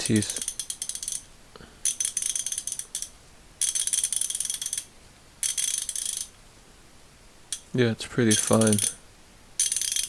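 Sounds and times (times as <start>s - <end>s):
ratchet clicking fast: 0.2s - 6.3s, 8.3s - 9.0s, 9.6s - 10.0s.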